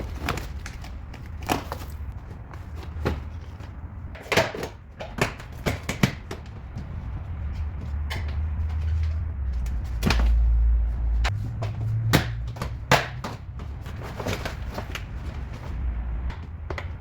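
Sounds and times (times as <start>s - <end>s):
low steady rumble: 6.6s - 17.0s.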